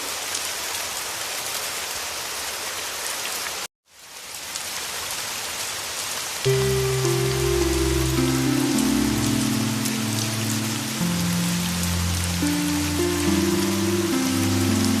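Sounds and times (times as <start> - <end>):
heavy rain: 0.0 - 15.0
music with low held notes: 6.5 - 15.0.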